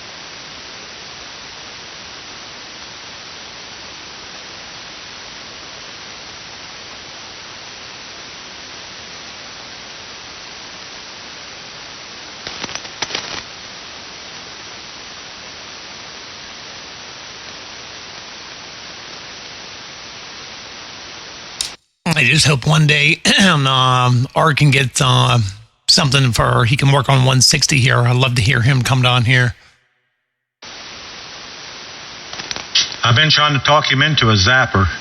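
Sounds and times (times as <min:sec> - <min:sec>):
radio receiver noise hiss: 0:00.0 - 0:29.6, 0:30.6 - 0:35.0
radio crackles: 0:21.6 - 0:29.7.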